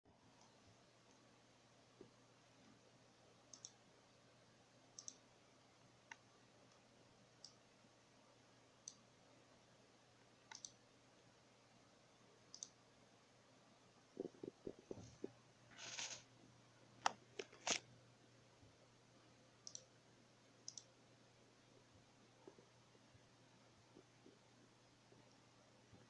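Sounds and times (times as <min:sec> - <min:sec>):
low steady hiss: 0:00.1 - 0:26.0
faint sharp clicks: 0:03.5 - 0:03.8, 0:05.0 - 0:05.2, 0:20.7 - 0:20.9.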